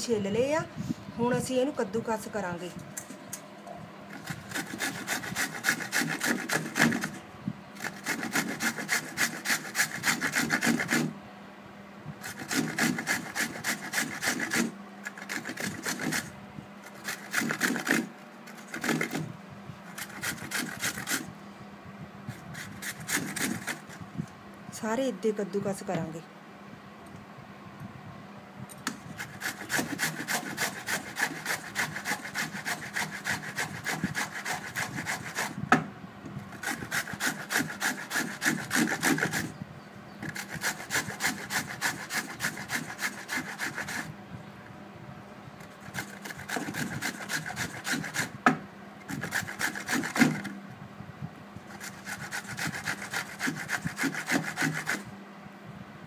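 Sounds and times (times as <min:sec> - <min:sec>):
mango rasping on grater: 0:04.1 - 0:07.2, 0:07.8 - 0:11.2, 0:12.2 - 0:19.3, 0:19.9 - 0:21.3, 0:22.3 - 0:24.0, 0:28.9 - 0:35.6, 0:36.5 - 0:39.6, 0:40.2 - 0:44.1, 0:45.6 - 0:50.6, 0:51.7 - 0:55.1.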